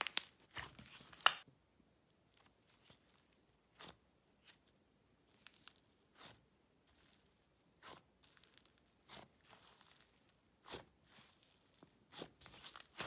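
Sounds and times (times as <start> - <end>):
slime crackling: 6.9 - 13.0.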